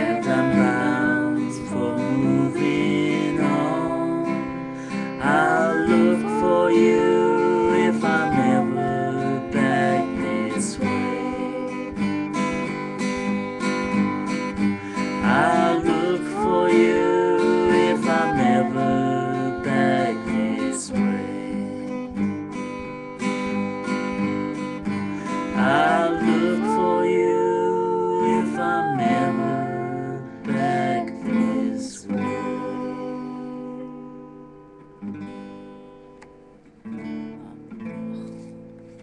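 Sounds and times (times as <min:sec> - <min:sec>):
person singing: 0:00.0 - 0:13.3, 0:14.6 - 0:22.3, 0:25.1 - 0:34.8
acoustic guitar strumming: 0:00.0 - 0:39.0.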